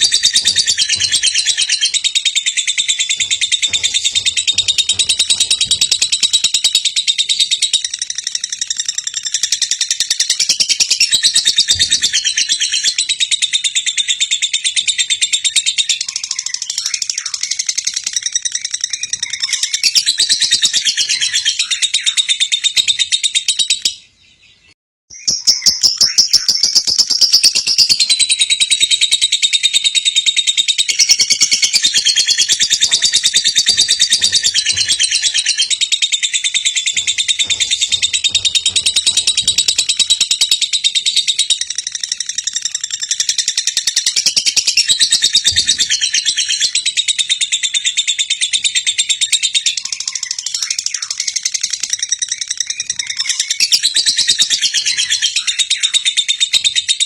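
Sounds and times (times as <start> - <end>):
lovebird chattering and trilling: 0.0 - 24.0, 25.1 - 57.0.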